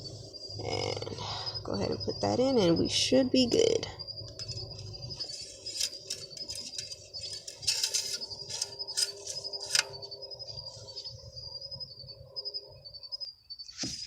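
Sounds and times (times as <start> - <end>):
crickets chirring: 0.0 - 14.0.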